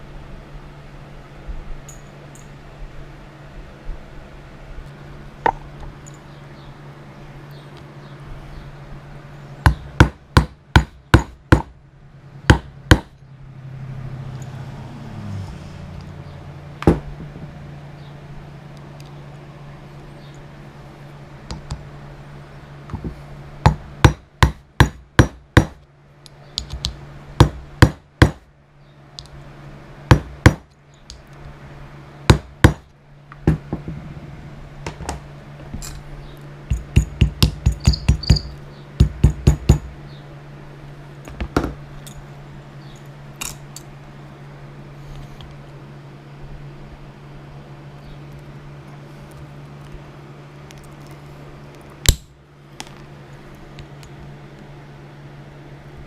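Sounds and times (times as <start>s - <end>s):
steady low hum: 0.0s - 56.0s
hammer strikes on leather: 9.7s - 11.7s, 12.5s - 13.1s, 23.7s - 25.8s, 27.4s - 28.4s, 30.1s - 30.7s, 32.3s - 32.9s, 36.7s - 39.9s.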